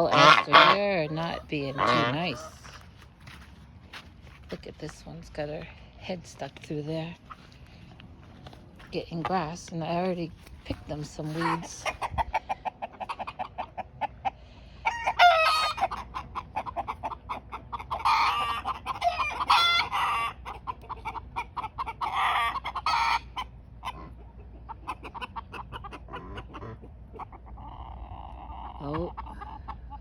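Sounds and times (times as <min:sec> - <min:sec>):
chickens clucking: 0:00.0 - 0:03.5, 0:05.2 - 0:30.0
loud drawn-out chicken calls: 0:11.4 - 0:30.0.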